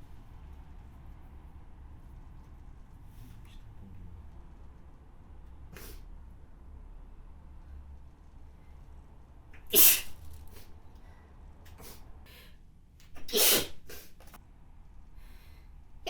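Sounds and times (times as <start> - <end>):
person sneezing: 9.7 - 10.1, 13.2 - 14.1.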